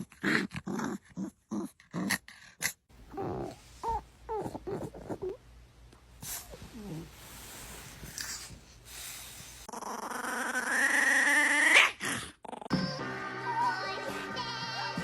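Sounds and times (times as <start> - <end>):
dog growling: 0.0 - 5.4, 9.7 - 12.7
dog whining: 3.1 - 5.4.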